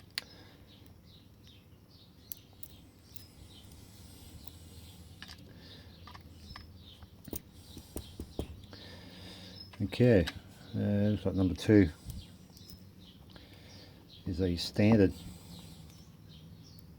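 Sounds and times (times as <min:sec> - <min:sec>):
faint bird chirps: 0:00.0 - 0:16.9
metal padlock parts clicking: 0:02.2 - 0:08.8, 0:09.6 - 0:10.5, 0:11.1 - 0:13.4.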